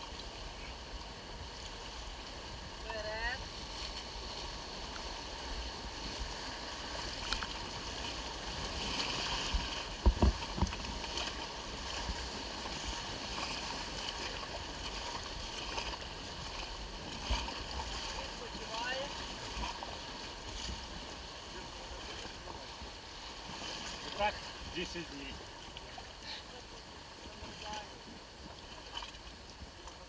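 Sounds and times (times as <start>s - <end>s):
river water: 0.0s - 30.0s
wind: 0.0s - 30.0s
low knocks: 10.0s - 10.7s.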